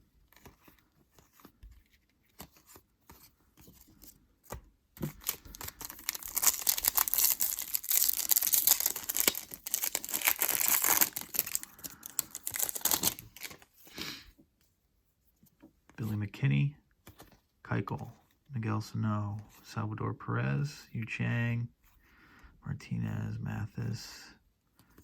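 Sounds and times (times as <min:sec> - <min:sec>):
foil wrapper tearing and crinkling: 0:05.1 - 0:13.6.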